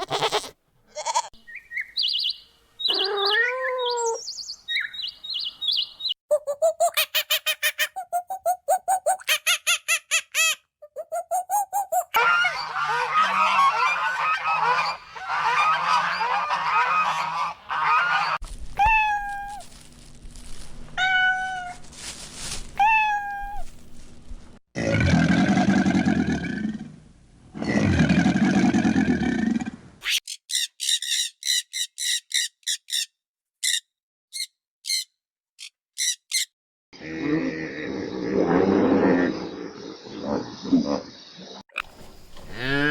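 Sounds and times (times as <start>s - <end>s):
waterfowl honking: 12.2s - 18.4s
animal calls falling in pitch: 18.8s - 19.8s.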